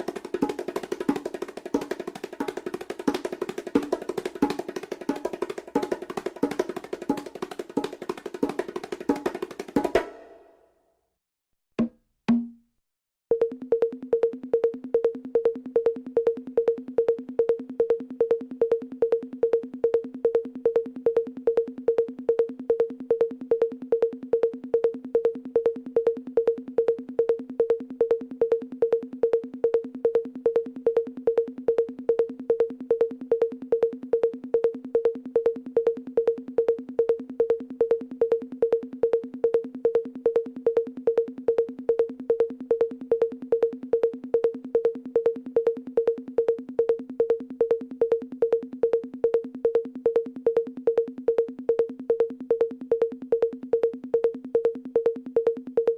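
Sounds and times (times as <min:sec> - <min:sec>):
electronic percussion hit loop: 0:00.0 - 0:10.6, 0:11.8 - 0:12.6.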